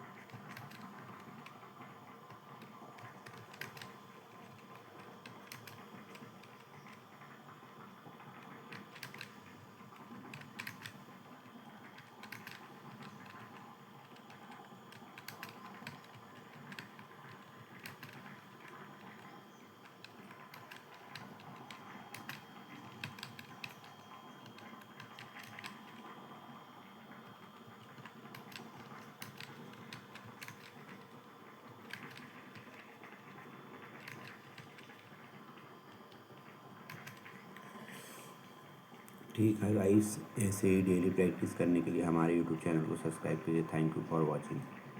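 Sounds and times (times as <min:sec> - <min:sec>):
faint steady hum: 0:00.0 - 0:44.9
keyboard typing clicks: 0:02.6 - 0:07.0, 0:08.7 - 0:09.4, 0:10.3 - 0:11.0, 0:12.0 - 0:19.2, 0:19.8 - 0:26.0, 0:27.8 - 0:31.2, 0:31.8 - 0:32.9, 0:33.9 - 0:35.2, 0:36.9 - 0:37.7.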